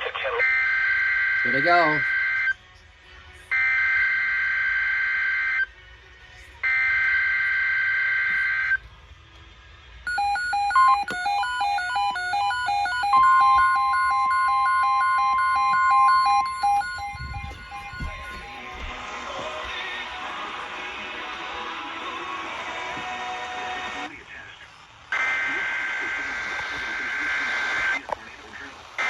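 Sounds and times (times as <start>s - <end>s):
digital warbling data tones: 10.1s - 18.9s
steady alert tone: 10.1s - 19.0s
two-tone electronic beeps: 10.1s - 19.0s.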